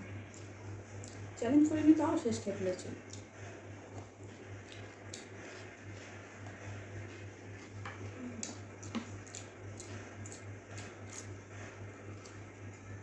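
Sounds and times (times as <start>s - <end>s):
steady low hum: 0.0s - 13.0s
mouth clicks and smacks eating: 0.2s - 1.4s, 3.0s - 6.0s, 7.7s - 11.4s.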